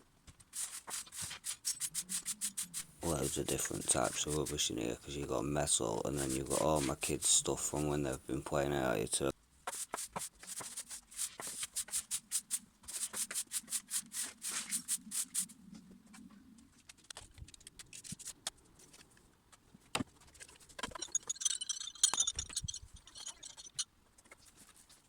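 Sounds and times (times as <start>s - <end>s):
garden rubbish scraping and rustling: 2.8s - 8.2s.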